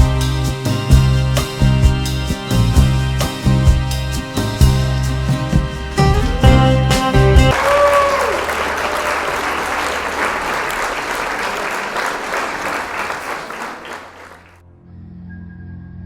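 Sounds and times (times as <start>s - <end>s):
crowd applauding: 5.6s - 14.6s.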